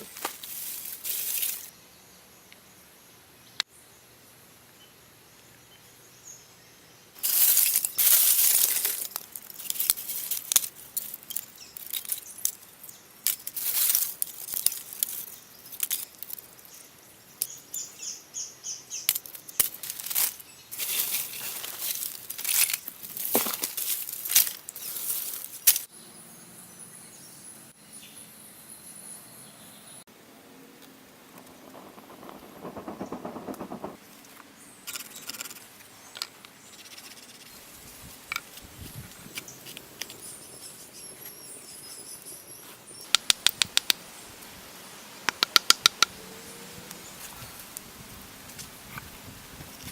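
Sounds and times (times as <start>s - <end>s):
scraping and rubbing strokes: 31.1s - 34.3s.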